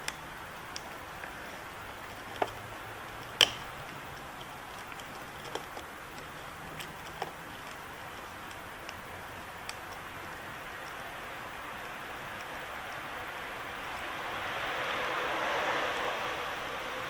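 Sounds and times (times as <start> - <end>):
steady hiss: 0.0 - 17.0
pliers clicking on metal pins: 3.2 - 7.4.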